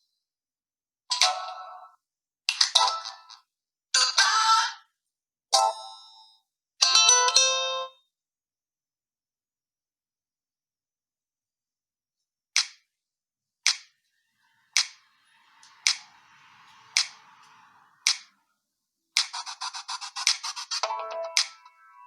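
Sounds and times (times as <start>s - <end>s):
ringtone sharp clicks: 19.2s - 22.0s.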